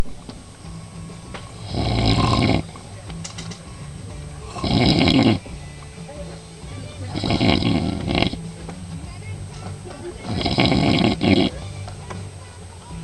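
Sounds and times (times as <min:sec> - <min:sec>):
man snoring: 0:01.6 - 0:02.8, 0:04.4 - 0:05.5, 0:07.1 - 0:08.5, 0:10.2 - 0:11.6.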